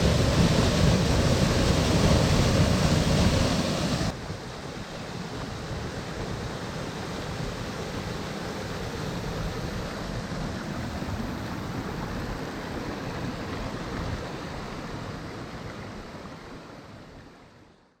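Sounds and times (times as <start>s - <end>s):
waterfall rushing: 0.0s - 4.2s.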